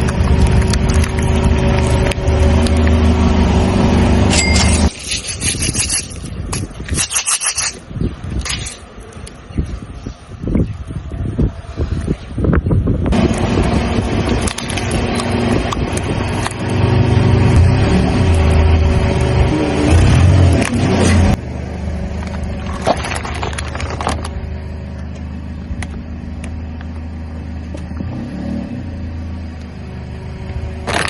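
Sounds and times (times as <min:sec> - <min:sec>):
car engine rumbling: 0:00.0 - 0:07.0, 0:07.8 - 0:31.0
objects crunching under tyre: 0:22.2 - 0:24.4.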